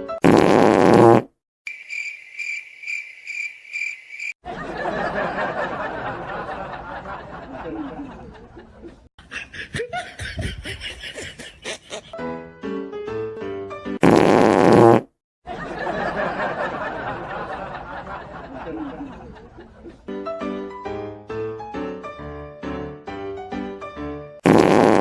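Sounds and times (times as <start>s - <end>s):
cricket chirp effect: 1.7s - 4.4s
laughter: 4.4s - 12.2s, 15.5s - 20.1s.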